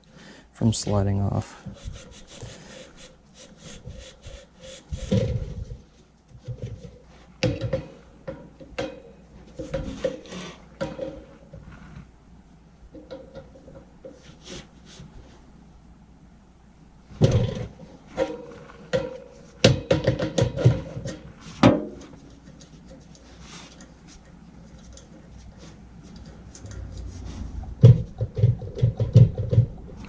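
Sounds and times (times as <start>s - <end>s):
metal scraping rust off shaft: 1.7s - 5.4s.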